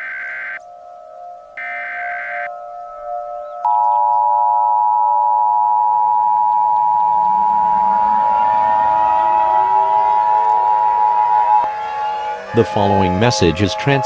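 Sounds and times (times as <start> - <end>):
siren winding up: 0.0 - 14.0
two-tone electronic alert tone: 0.0 - 14.0.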